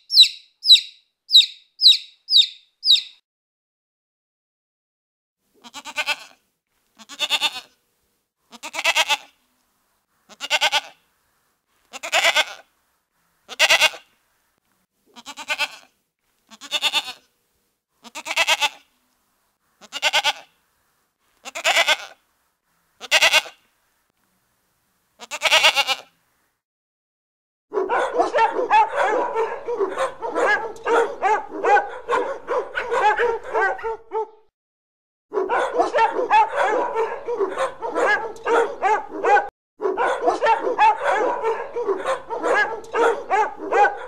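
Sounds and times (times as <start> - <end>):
farm animal bleating: 5.6 - 6.4, 7.0 - 7.8, 8.5 - 9.4, 10.3 - 11.0, 11.9 - 12.7, 13.5 - 14.1, 15.1 - 15.9, 16.5 - 17.3, 18.0 - 18.9, 19.8 - 20.6, 21.4 - 22.2, 23.0 - 23.6, 25.2 - 26.1.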